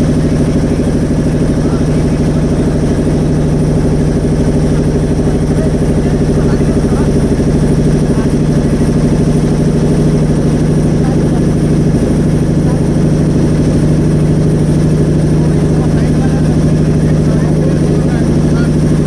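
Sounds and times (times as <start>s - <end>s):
motorboat engine running: 0.0s - 19.0s.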